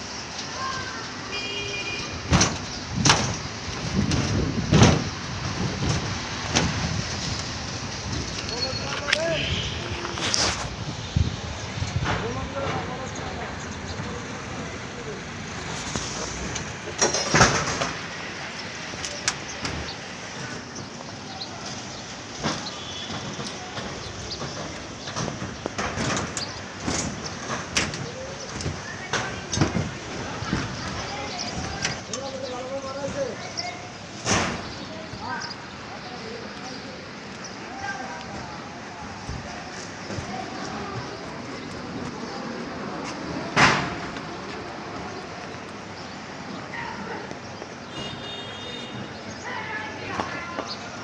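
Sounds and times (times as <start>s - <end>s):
construction site background noise: 0.0s - 51.0s
steady background noise: 0.0s - 51.0s
loud knocks: 2.3s - 7.0s
scattered knocks and clatters: 2.3s - 8.5s, 15.8s - 18.1s, 21.7s - 32.2s.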